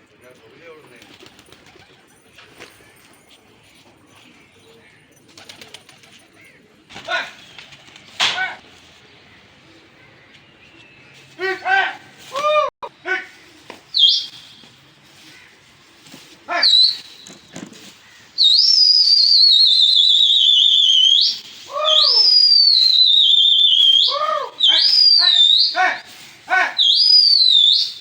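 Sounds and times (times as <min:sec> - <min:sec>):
crows cawing: 0:15.2 - 0:15.7, 0:17.8 - 0:18.3
high quavering whistle: 0:18.4 - 0:25.8, 0:26.8 - 0:28.0.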